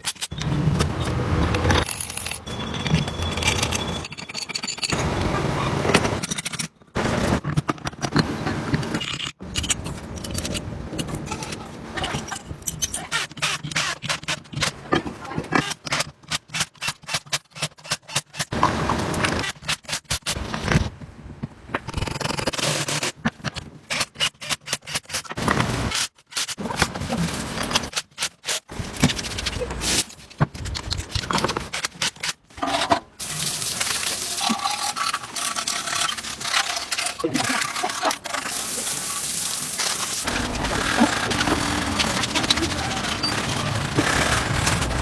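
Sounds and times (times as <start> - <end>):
scraping and rubbing: 23.9 - 45.0.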